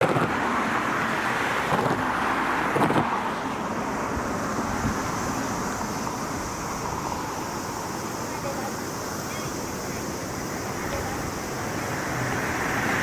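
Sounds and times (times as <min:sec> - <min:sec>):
vehicle noise: 0:00.0 - 0:13.0
wind on microphone: 0:04.0 - 0:13.0.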